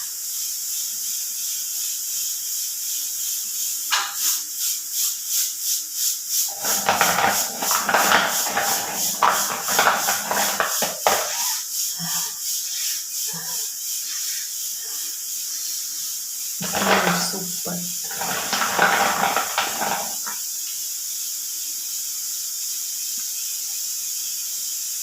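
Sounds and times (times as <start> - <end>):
steady hiss: 0.0 - 25.0
mothballs rattling together: 6.4 - 11.8, 16.6 - 20.6.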